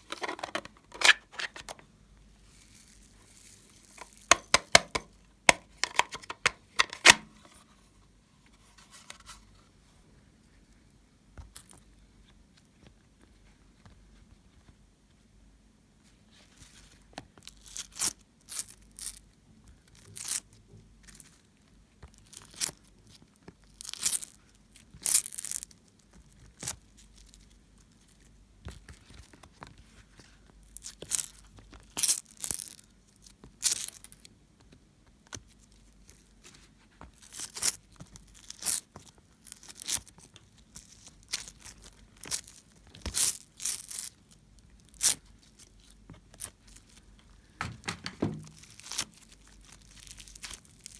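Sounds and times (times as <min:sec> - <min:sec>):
slime squishing crackles: 0:37.1 - 0:47.0, 0:48.4 - 0:50.9.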